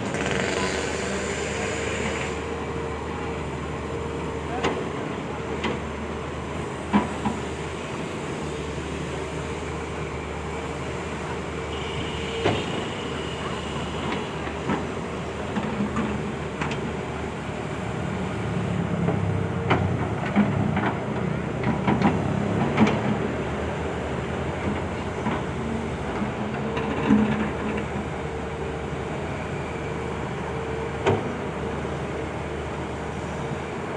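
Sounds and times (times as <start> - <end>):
excavator engine drone: 0.0 - 33.9.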